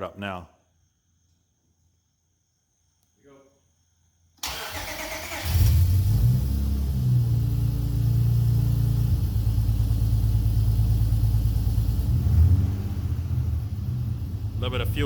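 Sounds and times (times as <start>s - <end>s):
car engine idling: 4.5s - 15.0s.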